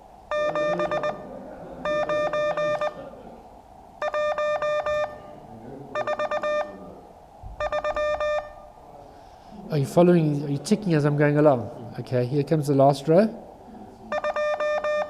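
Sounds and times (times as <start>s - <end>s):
morse code tone: 0.3s - 3.0s, 4.0s - 5.3s, 5.9s - 6.8s, 7.6s - 8.6s, 14.1s - 15.0s.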